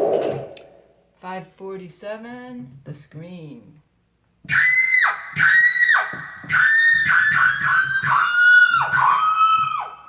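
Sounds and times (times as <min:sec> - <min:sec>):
keyboard scream sound effect: 0:04.5 - 0:10.0.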